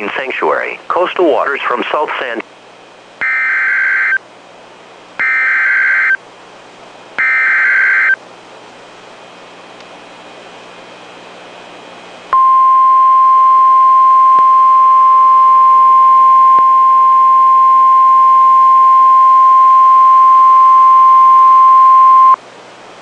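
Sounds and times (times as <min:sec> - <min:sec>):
faint radio hiss: 0:00.0 - 0:02.5
steady high alarm tone: 0:03.2 - 0:04.2, 0:05.2 - 0:06.2, 0:07.2 - 0:08.2, 0:12.4 - 0:22.4.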